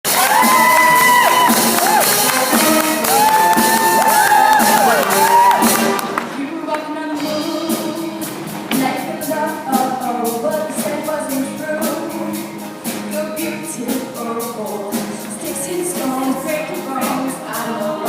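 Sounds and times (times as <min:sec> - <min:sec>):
band accompaniment: 0:00.0 - 0:18.0
steady percussion beat: 0:00.1 - 0:06.3
female vocal group singing: 0:06.3 - 0:18.0.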